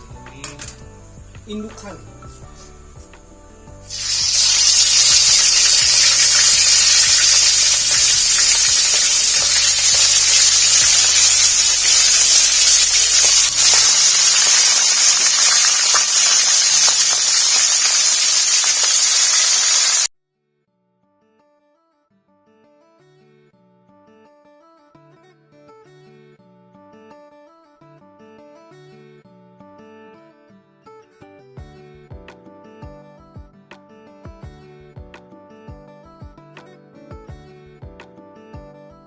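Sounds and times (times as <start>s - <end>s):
quail sizzling in hot oil: 3.9s - 20.1s.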